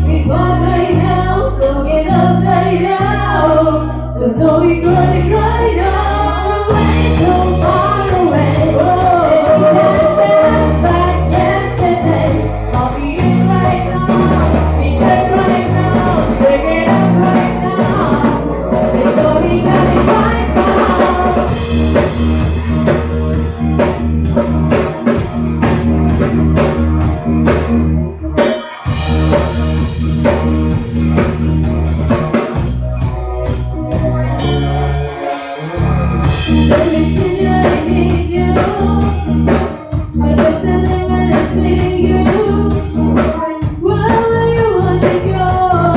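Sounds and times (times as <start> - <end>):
drum kit beat: 0.0 - 4.0, 4.8 - 45.9
person singing: 0.0 - 23.0, 33.9 - 45.9
bass guitar: 0.0 - 45.9
electric guitar: 0.0 - 45.9.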